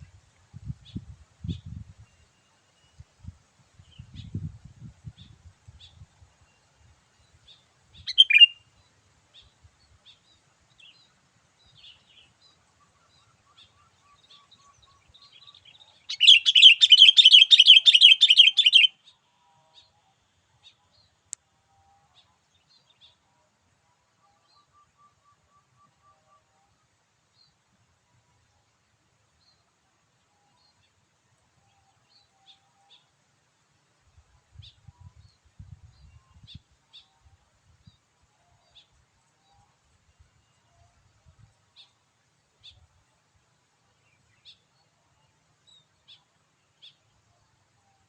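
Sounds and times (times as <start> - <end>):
bird chirps: 8.0 - 8.7, 11.7 - 19.2
rapid chattering bird trill: 16.1 - 18.9.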